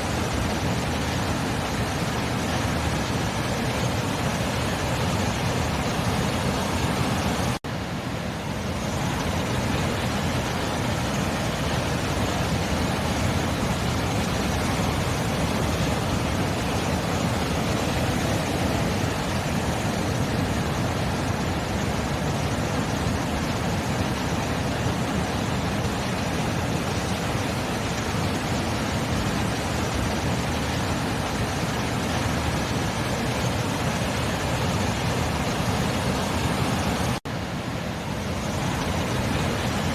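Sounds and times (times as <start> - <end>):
ocean surf rushing: 0.0 - 39.9.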